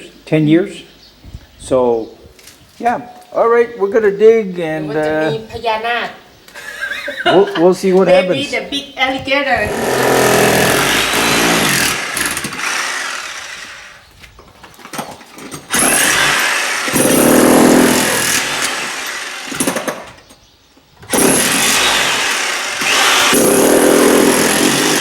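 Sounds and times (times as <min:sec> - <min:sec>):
demolition hammer breaking concrete: 0:09.7 - 0:13.2, 0:15.7 - 0:20.1, 0:21.1 - 0:25.0.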